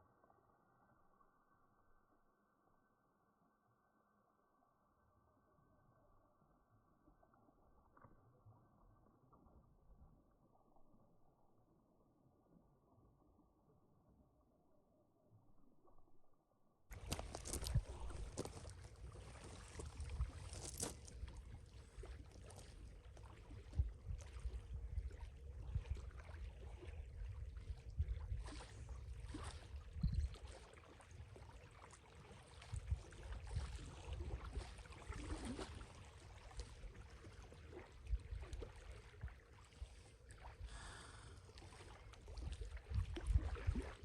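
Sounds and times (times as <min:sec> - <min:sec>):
water lapping: 0:16.9 - 0:44.0
wind buffeting microphone: 0:17.0 - 0:21.5, 0:29.9 - 0:30.4.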